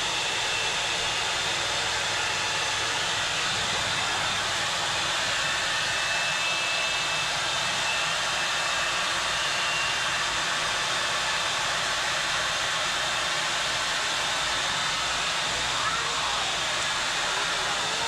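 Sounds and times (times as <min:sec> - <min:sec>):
electric air pump running: 0:00.0 - 0:18.0.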